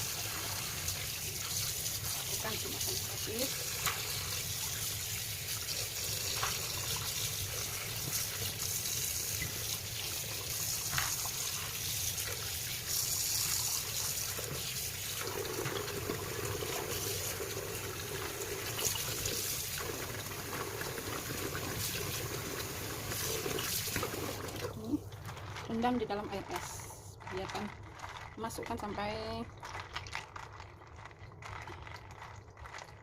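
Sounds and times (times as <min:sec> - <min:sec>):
tap water running: 0:00.0 - 0:33.0
water splashing into container: 0:14.4 - 0:33.0.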